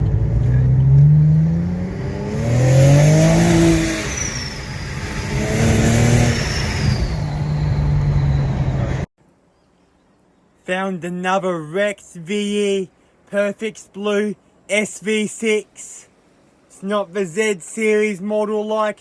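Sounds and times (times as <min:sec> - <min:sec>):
car engine accelerating: 0:00.0 - 0:09.1
road and wind noise: 0:00.0 - 0:10.2, 0:12.9 - 0:18.4.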